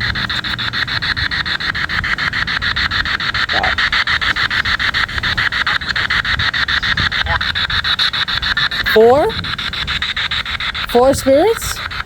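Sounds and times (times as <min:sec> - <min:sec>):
radio static chopped by clicks: 0:07.0 - 0:07.6.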